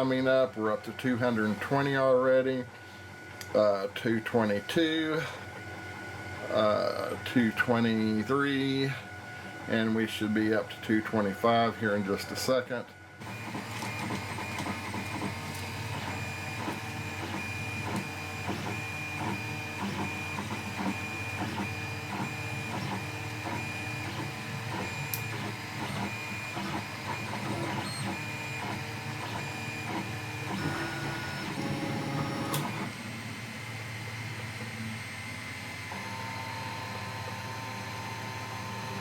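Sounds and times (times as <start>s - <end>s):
stepper motors whining: 13.3s - 33.0s.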